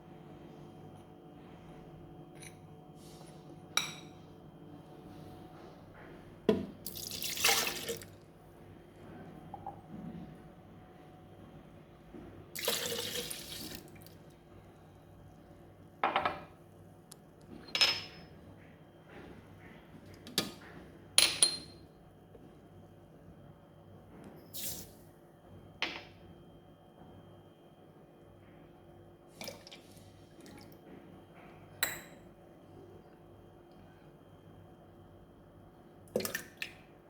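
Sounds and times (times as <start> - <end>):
liquid pouring: 6.9 - 8.2, 12.6 - 14.1.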